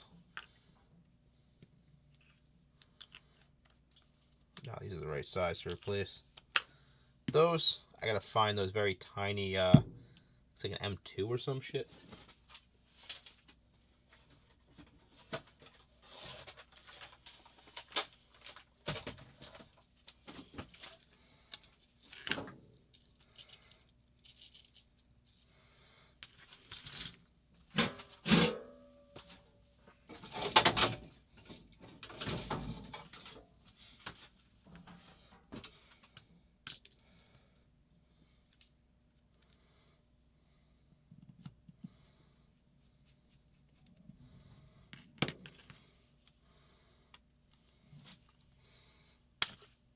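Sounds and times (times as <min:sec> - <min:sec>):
small metal parts rattling: 0:20.0 - 0:27.3, 0:36.6 - 0:37.3
metal parts clattering: 0:26.2 - 0:27.3.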